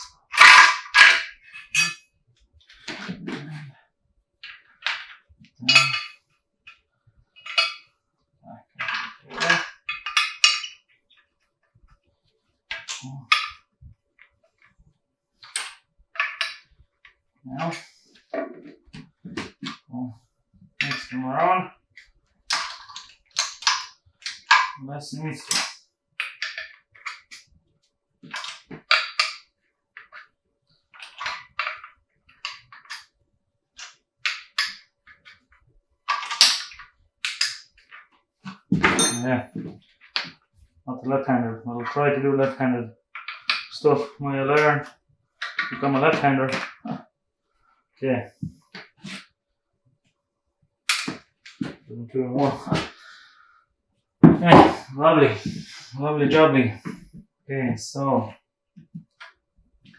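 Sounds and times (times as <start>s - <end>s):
metal engine parts clinking: 0.0s - 2.0s, 5.7s - 6.2s, 38.7s - 39.7s
metal parts clinking: 0.0s - 2.0s, 4.8s - 6.2s, 7.4s - 7.9s, 8.8s - 10.8s, 36.1s - 38.0s, 38.7s - 40.3s.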